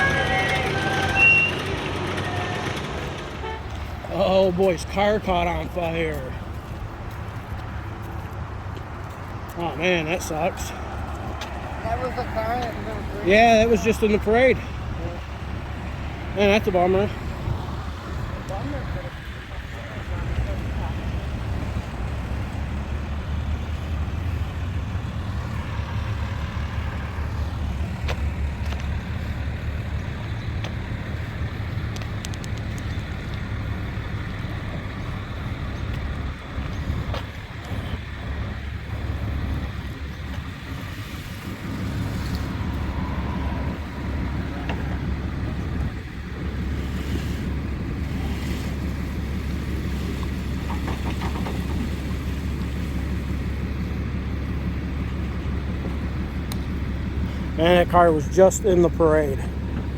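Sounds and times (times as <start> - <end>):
street noise: 0.0 - 59.9
truck engine idling: 0.0 - 59.9
sharp clicks: 31.9 - 33.5.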